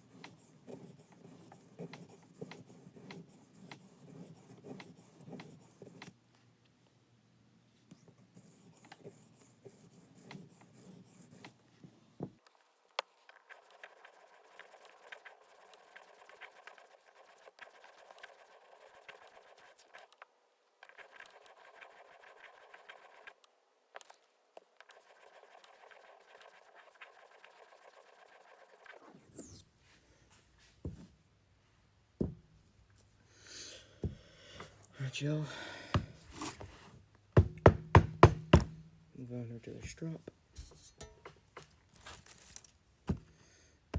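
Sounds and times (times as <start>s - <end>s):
knocks: 37.4s - 38.8s.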